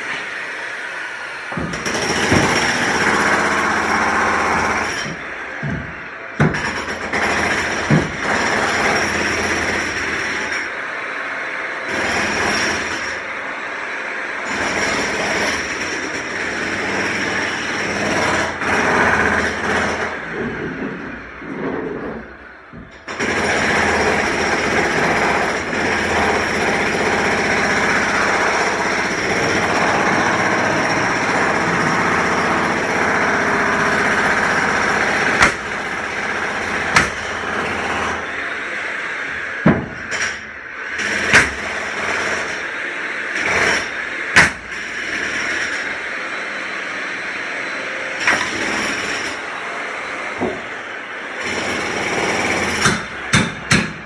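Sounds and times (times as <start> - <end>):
construction machinery din: 0.0 - 54.0
sharp metallic knocks: 52.8 - 54.0.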